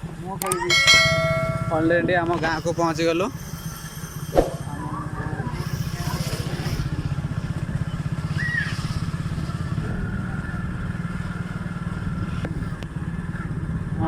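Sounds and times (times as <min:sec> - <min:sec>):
motorcycle engine running: 0:00.0 - 0:02.6, 0:04.8 - 0:14.0
high chirp: 0:00.6 - 0:05.6.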